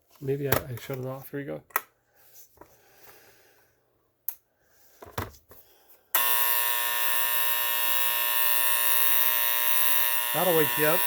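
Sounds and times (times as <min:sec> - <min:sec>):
alarm clock buzzer: 0:06.2 - 0:11.0.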